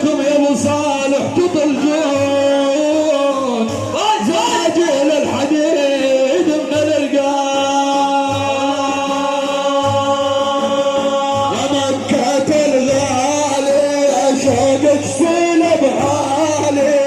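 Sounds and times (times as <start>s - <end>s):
men singing a religious chant: 0.0s - 17.0s.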